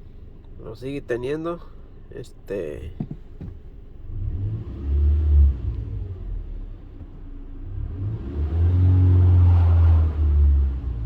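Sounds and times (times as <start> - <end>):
car engine revving: 4.0 - 6.7, 7.6 - 11.0.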